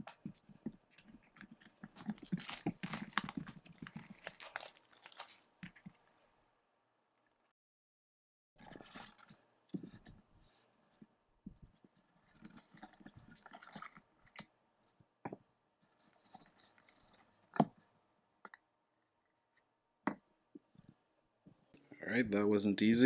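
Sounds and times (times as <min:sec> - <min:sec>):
packaging scraping and rustling: 0:00.9 - 0:06.0
packaging clicks and snaps: 0:01.9 - 0:05.4.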